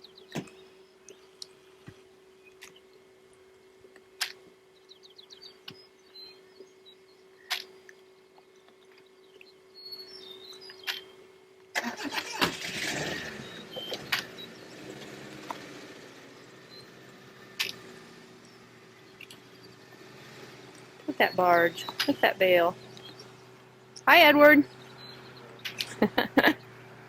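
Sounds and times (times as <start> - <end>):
engine starting and running: 11.7 - 27.0.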